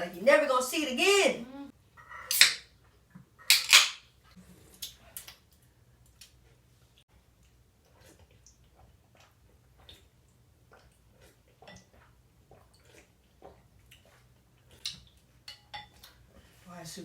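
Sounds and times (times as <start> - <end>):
spoons clicking against bowls: 3.5 - 4.0
mouth noises of eating: 7.4 - 15.2.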